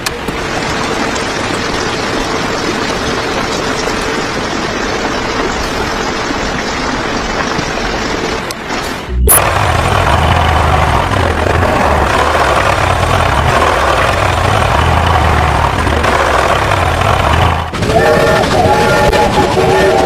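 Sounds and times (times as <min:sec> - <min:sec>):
heavy engine rumble: 0:08.7 - 0:20.0.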